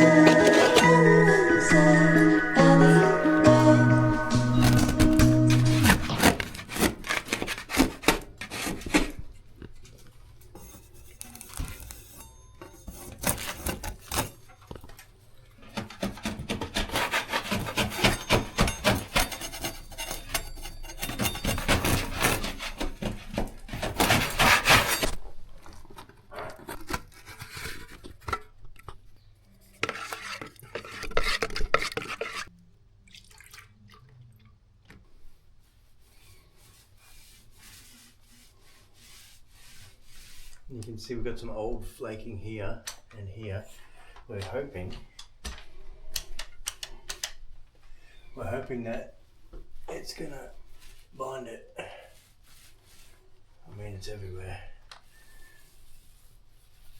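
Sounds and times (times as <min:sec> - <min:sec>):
metal tools scraping and clinking: 0:00.0 - 0:07.3, 0:09.7 - 0:15.0, 0:17.2 - 0:25.2.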